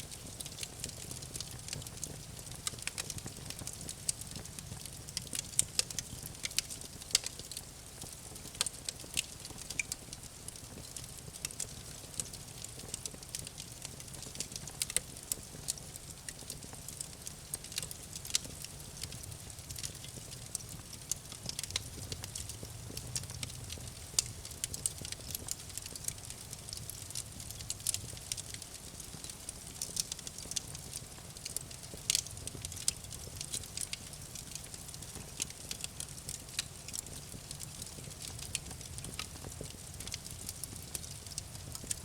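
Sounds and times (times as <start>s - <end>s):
low rumble of flames: 0.0s - 42.0s
wood crackling and popping: 0.0s - 42.0s.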